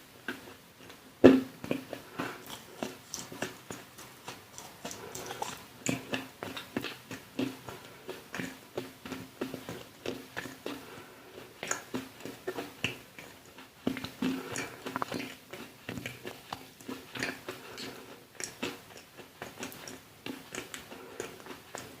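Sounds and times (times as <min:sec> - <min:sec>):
dog crunching hard treats: 0:01.7 - 0:08.5.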